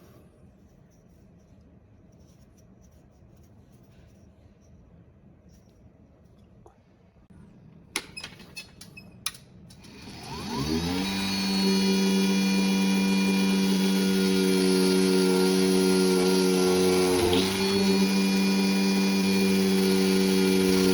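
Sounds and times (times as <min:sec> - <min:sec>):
table saw motor whining: 0:09.8 - 0:20.9.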